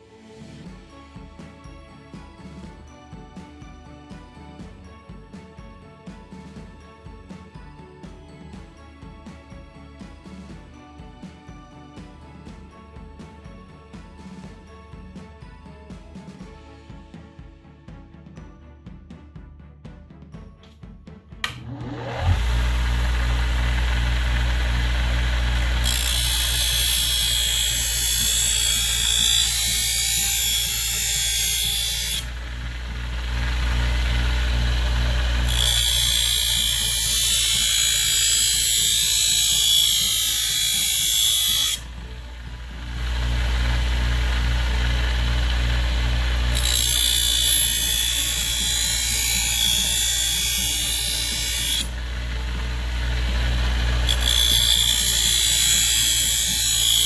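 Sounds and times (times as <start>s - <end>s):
grinding on abrasive: 21.4s - 57.0s
sander motor spinning: 21.4s - 57.0s.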